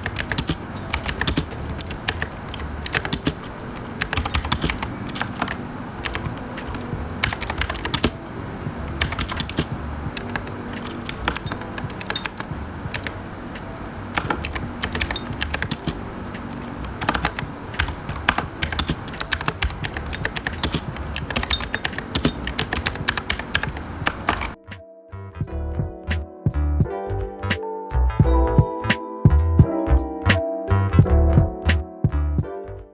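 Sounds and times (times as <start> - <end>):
mechanical keyboard typing: 0.0 - 24.6.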